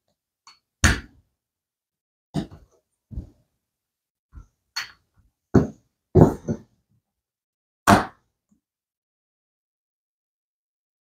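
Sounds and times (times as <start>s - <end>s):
thuds and knocks: 5.6s - 6.7s.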